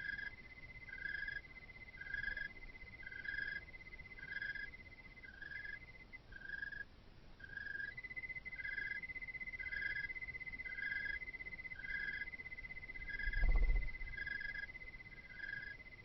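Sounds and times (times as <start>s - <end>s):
insect chirping: 0.0s - 16.0s
insect trilling: 7.4s - 16.0s.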